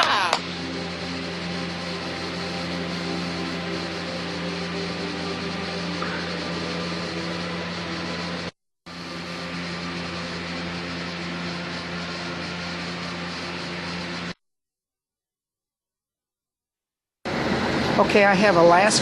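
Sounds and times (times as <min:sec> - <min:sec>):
condenser fan blowing air: 0:00.0 - 0:14.4, 0:17.3 - 0:19.0
steady electrical hum: 0:00.0 - 0:14.4.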